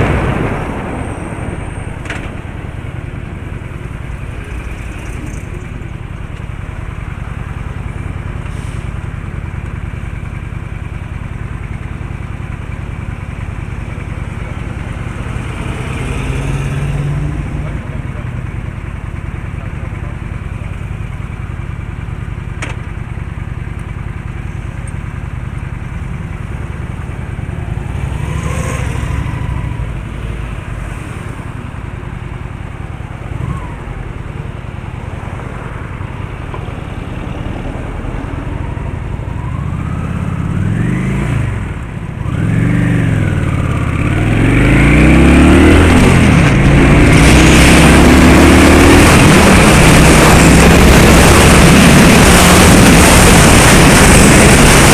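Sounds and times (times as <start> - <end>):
vehicle engine revving: 13.9 - 18.4, 39.4 - 54.9
rushing noise: 43.9 - 54.9.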